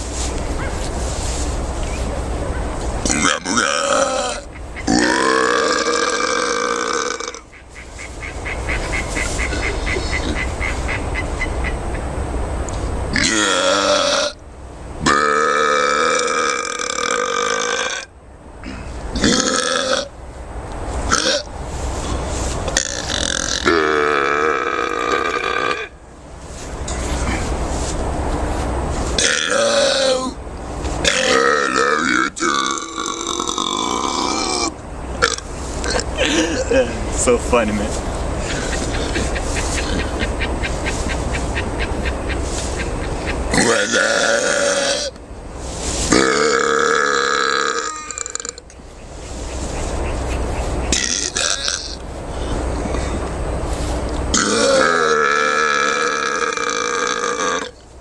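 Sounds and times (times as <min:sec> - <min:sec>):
long burp: 0:03.1 - 0:07.4, 0:13.1 - 0:14.4, 0:15.0 - 0:20.1, 0:21.1 - 0:21.5, 0:22.8 - 0:26.0, 0:31.1 - 0:36.8, 0:43.5 - 0:45.1, 0:46.1 - 0:48.6, 0:51.0 - 0:52.0, 0:54.3 - 0:57.8.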